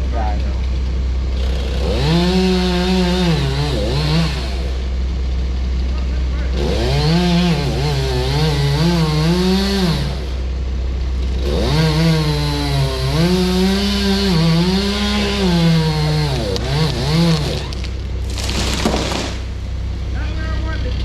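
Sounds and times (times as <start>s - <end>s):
low engine hum: 0.0s - 21.0s
chainsaw cutting at high revs: 1.3s - 5.0s, 6.5s - 10.6s, 11.2s - 19.6s.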